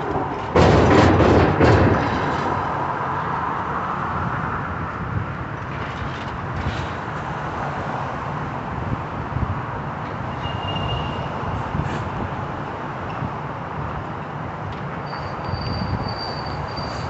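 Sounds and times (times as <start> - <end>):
loud demolition crash: 0.0 - 2.8
heavy machinery rumbling: 0.0 - 3.4.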